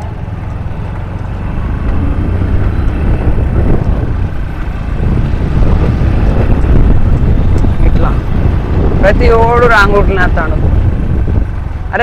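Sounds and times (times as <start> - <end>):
motorcycle engine running: 0.0 - 12.0
wind rumble on microphone: 0.0 - 12.0
person talking: 9.0 - 10.7.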